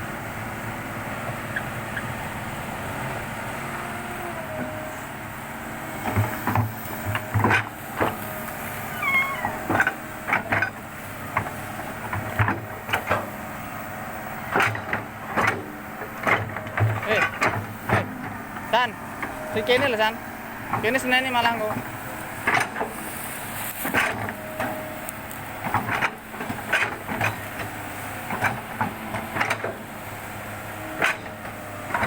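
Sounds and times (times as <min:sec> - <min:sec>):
excavator engine running: 0:00.0 - 0:32.0
falling squeal: 0:08.8 - 0:09.7.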